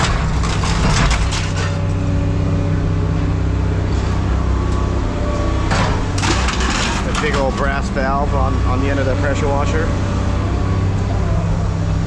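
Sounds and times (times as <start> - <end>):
heavy machine engine running: 0.0 - 12.0.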